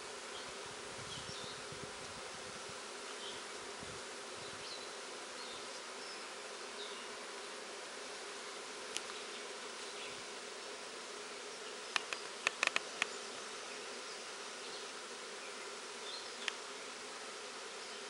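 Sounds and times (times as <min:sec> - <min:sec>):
bee swarm buzzing: 0:00.0 - 0:18.0
sharp clicks: 0:11.9 - 0:13.1.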